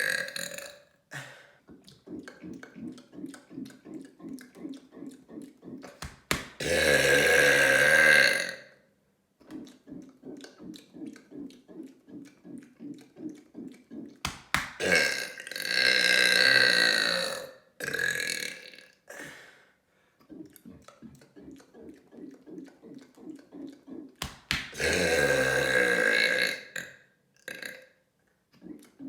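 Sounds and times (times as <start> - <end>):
loud human burps: 0.0 - 1.6, 6.6 - 8.8, 14.8 - 19.5, 24.7 - 28.0
soft rhythmic pulsing: 1.6 - 6.7, 9.4 - 15.6, 19.9 - 25.7.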